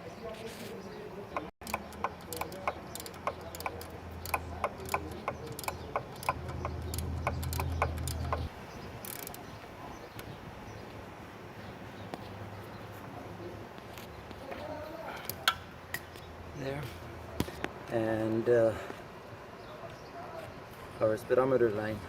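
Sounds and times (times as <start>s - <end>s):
hand ratchet clicking: 1.6s - 9.4s.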